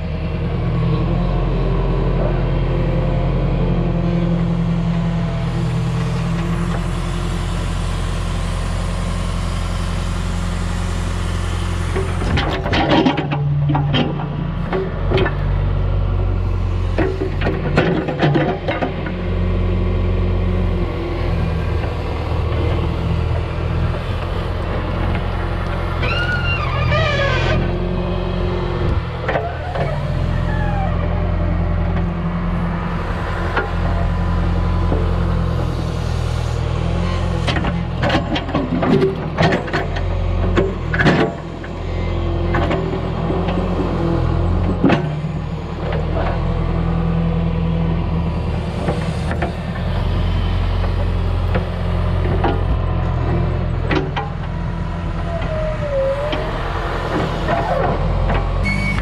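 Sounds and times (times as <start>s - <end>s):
backhoe diesel engine running: 0.0s - 59.0s.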